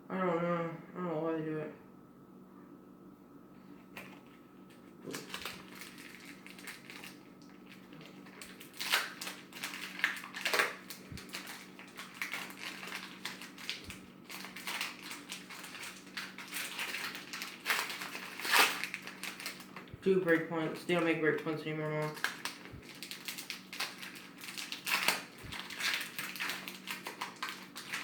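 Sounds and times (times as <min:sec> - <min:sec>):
foil wrappers crinkling and tearing: 0:05.0 - 0:28.0.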